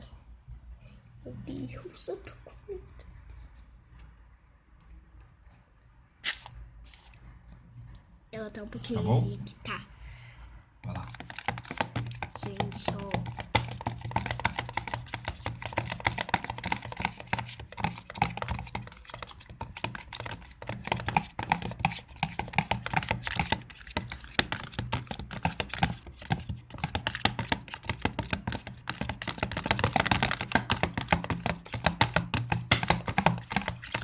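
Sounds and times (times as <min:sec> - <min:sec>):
sticky clicking and crackling slime: 0:10.9 - 0:34.0.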